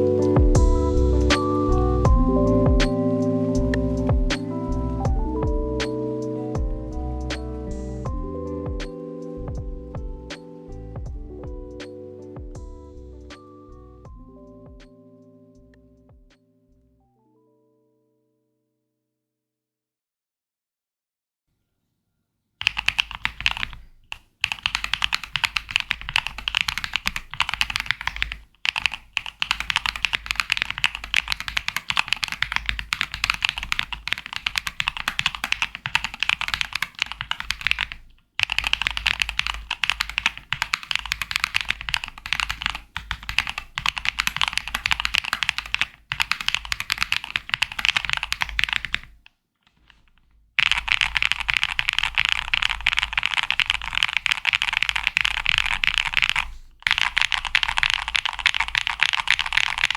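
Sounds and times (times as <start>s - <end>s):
mechanical keyboard typing: 22.6s - 59.9s.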